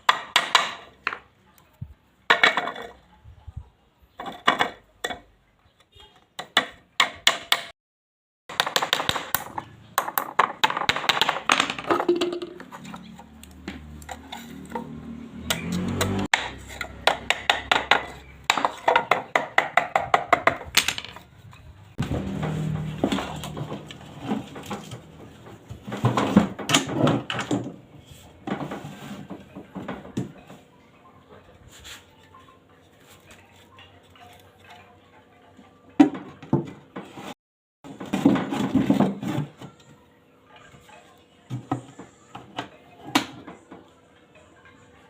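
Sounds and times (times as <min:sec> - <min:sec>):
knocking and clattering of hand-work: 0:00.0 - 0:01.3, 0:08.5 - 0:12.9, 0:13.6 - 0:21.2, 0:22.0 - 0:27.8, 0:36.0 - 0:39.7.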